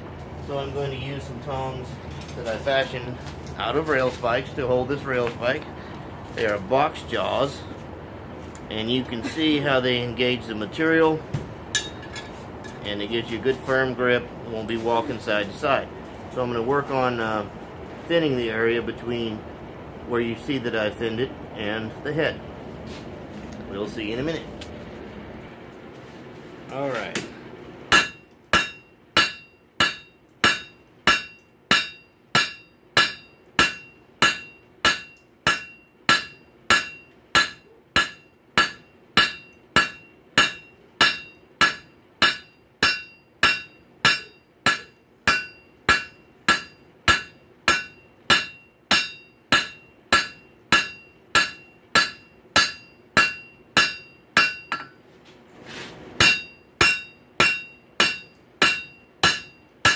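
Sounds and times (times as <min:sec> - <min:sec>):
hammer ringing on anvil: 0:11.8 - 0:12.2, 0:27.9 - 0:55.0, 0:56.2 - 0:59.9.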